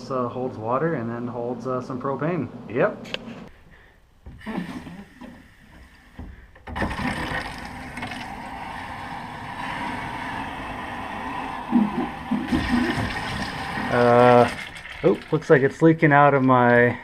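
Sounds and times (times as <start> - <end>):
water rushing into pipes: 6.7 - 16.0.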